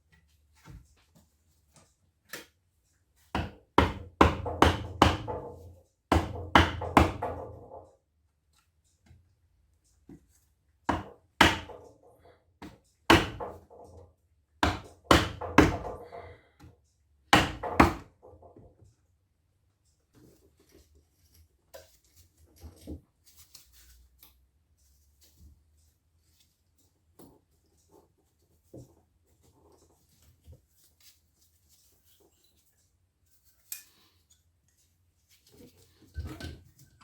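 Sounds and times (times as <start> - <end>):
sharp knocks on wooden block: 3.4 - 5.4, 6.1 - 7.6, 10.9 - 11.8, 12.6 - 13.6, 14.6 - 16.0.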